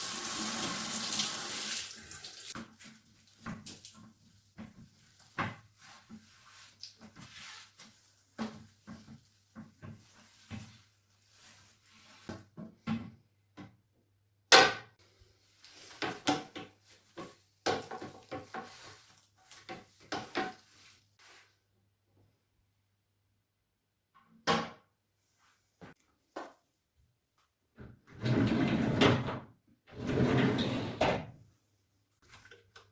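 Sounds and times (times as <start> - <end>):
objects knocking and clattering: 16.0 - 18.8.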